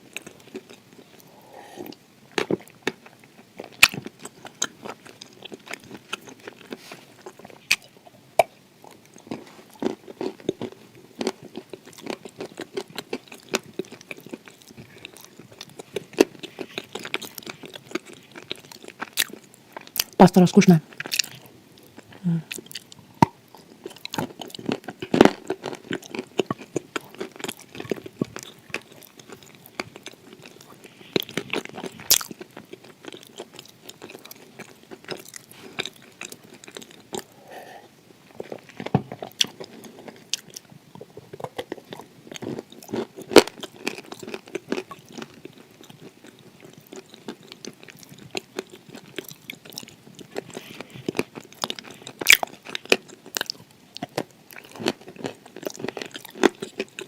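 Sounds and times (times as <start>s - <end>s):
person chewing crunchy clay: 0.0s - 20.2s, 20.8s - 57.0s.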